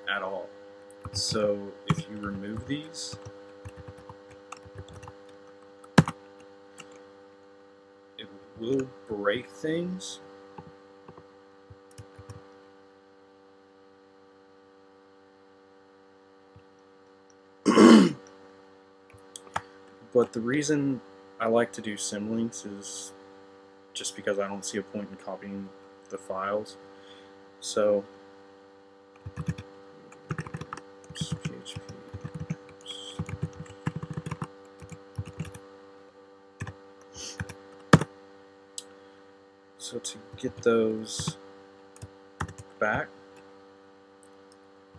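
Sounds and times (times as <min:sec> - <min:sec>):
electrical mains hum: 0:00.0 - 0:44.9
computer keyboard typing: 0:01.0 - 0:06.2, 0:11.9 - 0:12.4, 0:29.2 - 0:35.6, 0:36.6 - 0:38.1, 0:42.0 - 0:43.0.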